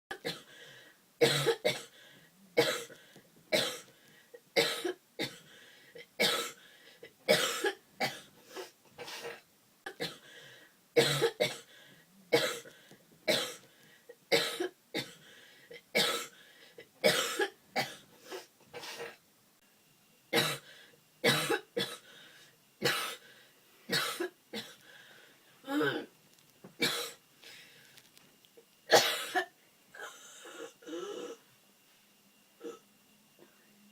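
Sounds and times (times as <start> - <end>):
person coughing: 0.1 - 0.6, 1.2 - 2.0, 2.6 - 3.9, 4.6 - 5.4, 6.2 - 6.6, 7.2 - 10.3, 11.0 - 11.7, 12.3 - 13.6, 14.3 - 15.2, 15.8 - 16.4, 17.0 - 19.2, 20.4 - 22.1, 22.8 - 23.2, 23.9 - 24.8, 25.6 - 26.1, 26.8 - 27.2, 28.9 - 31.4.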